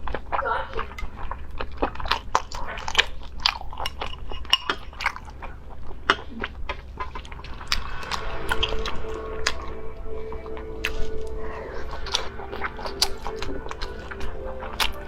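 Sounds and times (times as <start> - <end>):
chewing crunchy food: 0.0 - 15.0
music with steady tone: 7.6 - 15.0.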